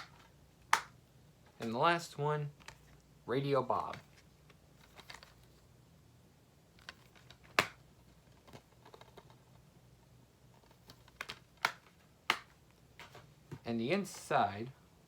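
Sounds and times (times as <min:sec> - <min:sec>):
dvd case snapping: 0:00.0 - 0:00.9, 0:06.8 - 0:07.8, 0:10.8 - 0:13.2
plastic clicks of dvd case: 0:03.8 - 0:05.4, 0:06.8 - 0:07.8, 0:10.6 - 0:13.2.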